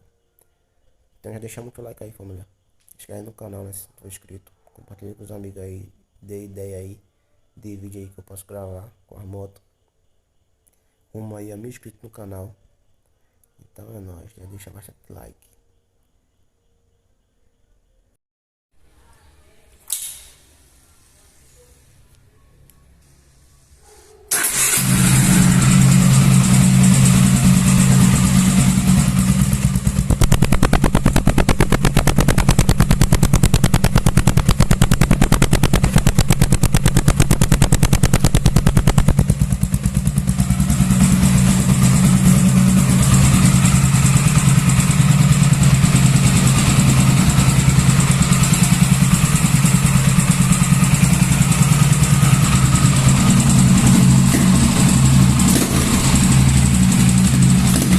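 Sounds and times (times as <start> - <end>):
motorcycle engine revving: 24.3 - 57.9.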